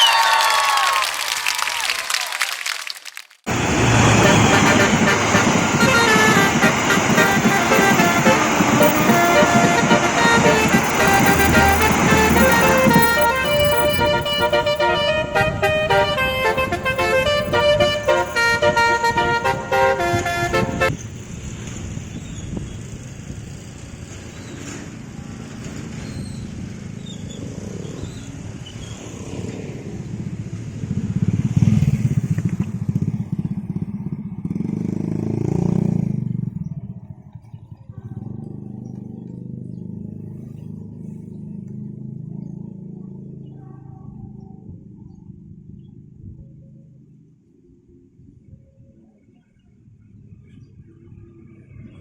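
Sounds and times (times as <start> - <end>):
musical air horn tune: 3.5 - 21.0
vehicle engine rumble: 3.5 - 29.0, 29.8 - 47.2.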